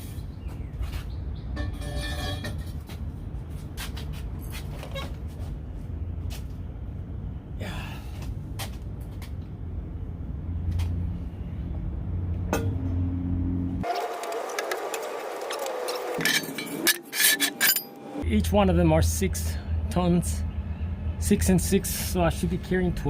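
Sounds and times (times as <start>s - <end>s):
metallic screech: 1.6s - 2.6s, 15.4s - 18.2s
steel hand tools clinking: 15.9s - 18.0s
steady low hum: 16.9s - 23.0s.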